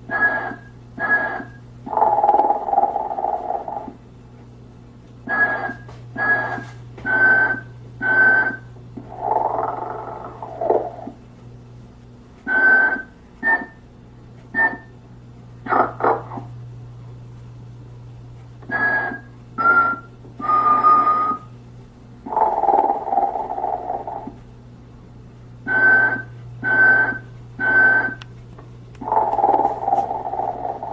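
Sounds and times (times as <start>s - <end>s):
steady low hum: 0.0s - 30.9s
recorded snoring with whistle: 0.2s - 1.6s, 18.8s - 21.5s.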